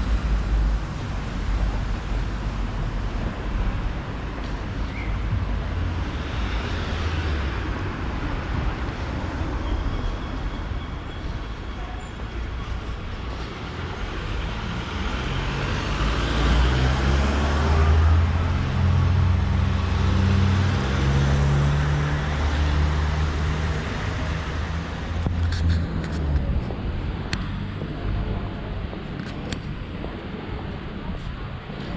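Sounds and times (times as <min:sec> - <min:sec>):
street traffic noise: 0:00.0 - 0:31.9
vehicle engine hum: 0:12.1 - 0:31.9.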